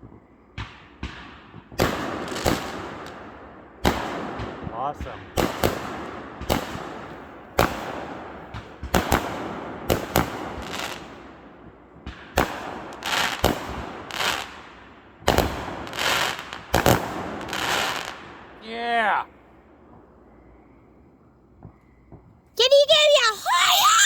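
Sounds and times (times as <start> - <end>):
fireworks bangs echoing: 0.6 - 19.0
fireworks crackling bursts: 0.7 - 3.3, 3.9 - 11.5, 12.1 - 19.3, 22.6 - 24.0.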